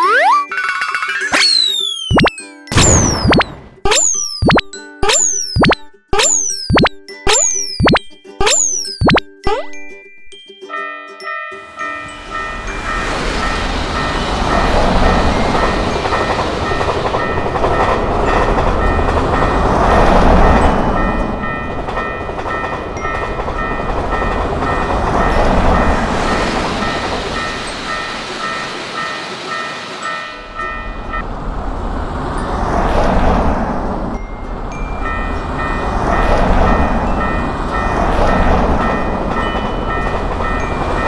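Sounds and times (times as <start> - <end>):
level-crossing electronic bell: 0.0 - 19.6
train rumble and wheel clatter: 12.1 - 41.0.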